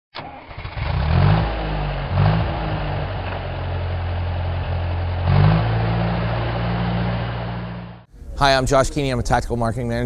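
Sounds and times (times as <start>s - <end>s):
tractor engine idling and revving: 0.2s - 8.1s.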